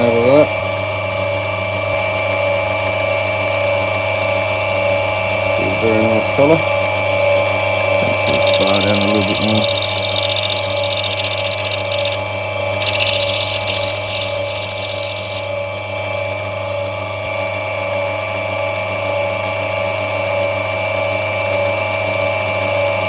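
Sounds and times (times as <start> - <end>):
grinding machine motor hum: 8.2 - 12.2, 12.8 - 15.5
stone grinding on wet wheel: 8.3 - 12.2, 12.8 - 15.5.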